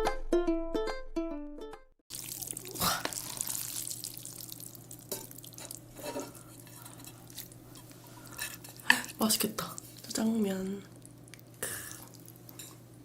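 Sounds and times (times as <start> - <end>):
ukulele music: 0.0 - 1.9
low room hum: 2.1 - 13.0.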